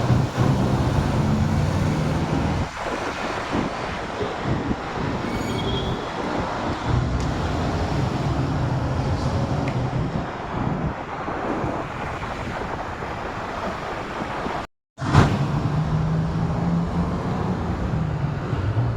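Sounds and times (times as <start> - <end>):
road traffic noise: 0.0 - 18.9.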